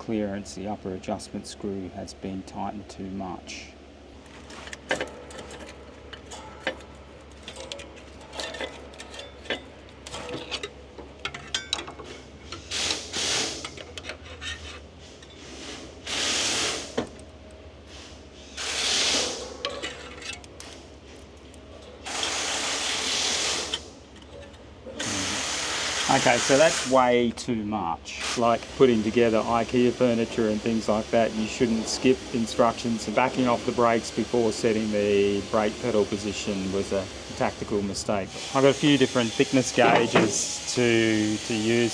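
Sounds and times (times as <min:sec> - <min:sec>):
hand tools clicking and ratcheting: 0:04.2 - 0:15.4, 0:18.6 - 0:26.9, 0:38.4 - 0:41.9
bursts of hissing: 0:12.6 - 0:13.7, 0:15.6 - 0:17.1, 0:17.9 - 0:19.5, 0:22.0 - 0:23.9, 0:25.0 - 0:27.0, 0:38.3 - 0:41.9.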